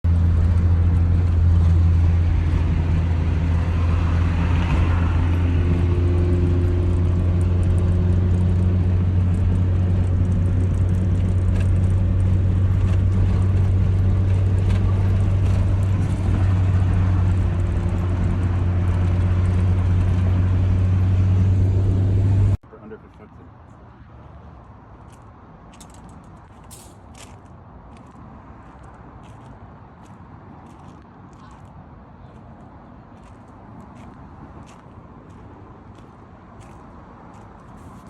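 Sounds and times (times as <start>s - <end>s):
car engine running steadily: 0.0s - 23.0s.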